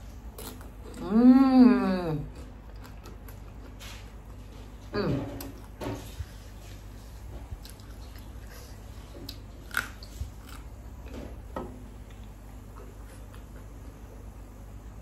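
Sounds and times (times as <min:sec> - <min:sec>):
person biting and chewing food: 0:00.0 - 0:01.0, 0:02.3 - 0:04.4, 0:05.4 - 0:14.0
steady low hum: 0:00.0 - 0:15.0.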